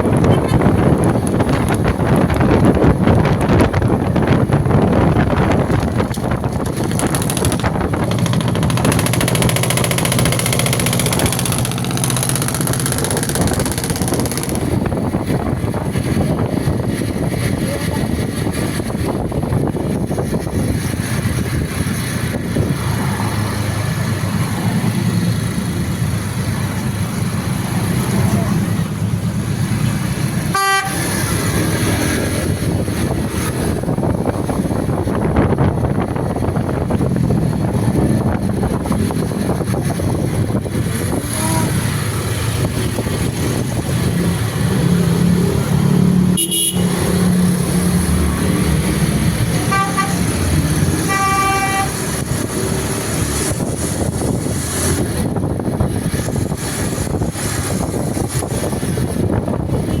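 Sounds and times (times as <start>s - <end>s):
bus engine and road noise: 0.0s - 60.0s
multi-tone air horn: 30.5s - 31.2s, 46.4s - 47.0s, 49.6s - 52.2s.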